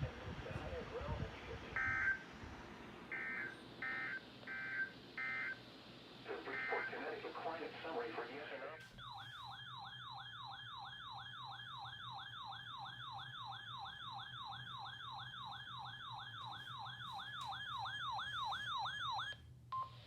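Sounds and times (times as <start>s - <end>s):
electronic alert siren whoop: 9.0s - 19.4s.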